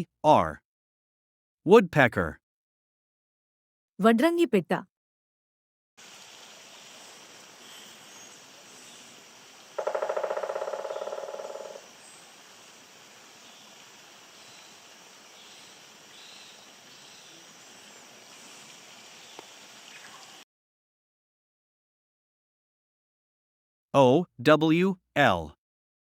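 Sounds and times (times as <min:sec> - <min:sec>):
faint outdoor background: 0:00.0 - 0:00.6, 0:01.7 - 0:02.4, 0:04.0 - 0:04.9, 0:06.0 - 0:20.5, 0:24.0 - 0:25.6
woodpecker drumming on wood: 0:09.8 - 0:11.9.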